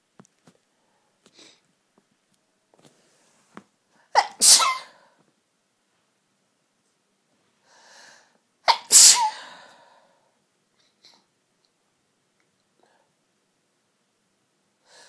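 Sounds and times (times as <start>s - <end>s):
person sneezing: 4.1s - 5.2s, 8.7s - 9.9s
soft intake of breath: 7.6s - 8.4s.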